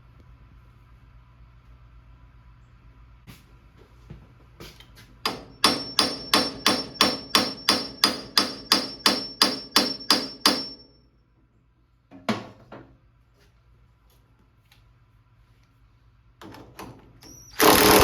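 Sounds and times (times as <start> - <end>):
hammer striking steel puller: 5.3 - 10.9.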